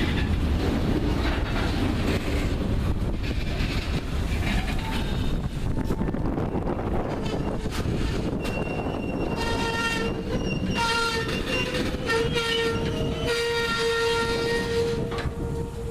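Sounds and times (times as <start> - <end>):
train rumble: 0.0 - 15.9
locomotive air horn blasts: 9.2 - 15.9.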